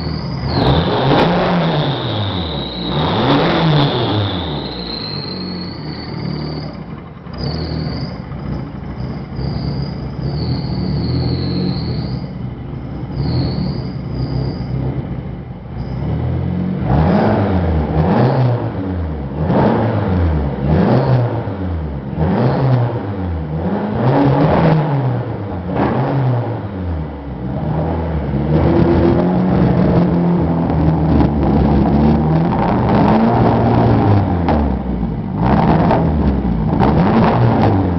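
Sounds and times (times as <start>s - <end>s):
sharp cracks in engine revs: 0.0s - 12.4s, 15.8s - 26.8s, 35.4s - 37.9s
car engine running rough and revving: 0.0s - 37.9s.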